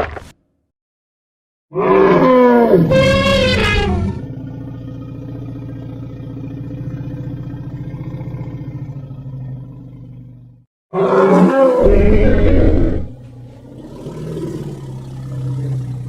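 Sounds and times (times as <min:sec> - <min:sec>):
creature bellowing roar: 0:01.7 - 0:04.4, 0:10.9 - 0:16.0
low rough growling rumble: 0:02.9 - 0:10.7, 0:11.8 - 0:16.0.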